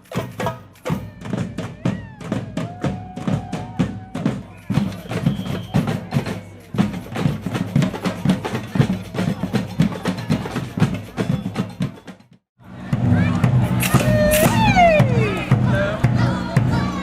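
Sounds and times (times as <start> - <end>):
wood-block strikes: 0.0 - 1.5, 4.6 - 12.4
samba band drumming: 0.0 - 17.0.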